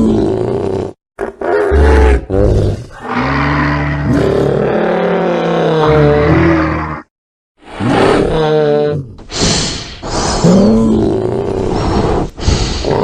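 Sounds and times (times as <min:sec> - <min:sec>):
deep bellowing creature calls: 0:01.4 - 0:07.1.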